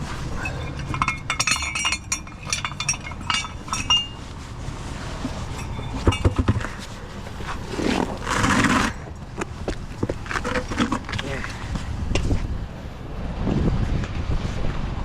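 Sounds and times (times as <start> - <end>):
metal tools clinking: 0.0 - 4.4, 5.3 - 9.0.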